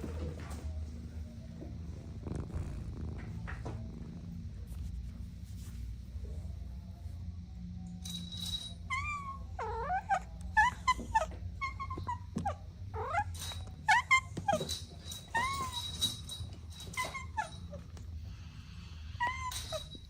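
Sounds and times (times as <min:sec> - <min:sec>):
low steady rumble: 0:00.7 - 0:08.4
kittens mewing: 0:08.9 - 0:16.0.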